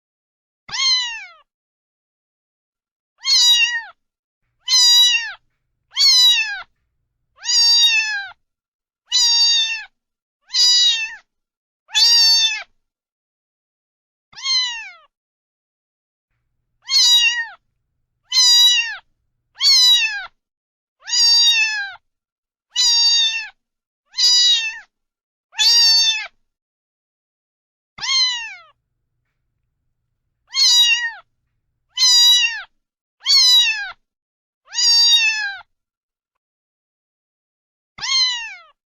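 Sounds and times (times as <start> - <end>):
cat meowing: 3.2 - 3.9, 4.6 - 6.8, 7.4 - 8.3, 10.5 - 11.2, 14.4 - 15.0, 16.8 - 17.6, 18.3 - 20.3, 28.0 - 28.7, 30.5 - 31.2, 31.9 - 32.7, 38.0 - 38.7.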